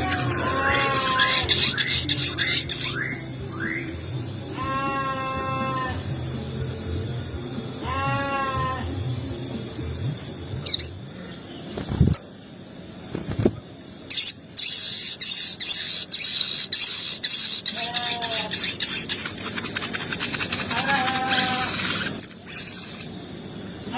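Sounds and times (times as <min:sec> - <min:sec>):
harsh fast bird chattering: 0:00.0 - 0:03.9, 0:13.3 - 0:23.1
bird calls: 0:00.0 - 0:04.0, 0:13.2 - 0:23.1.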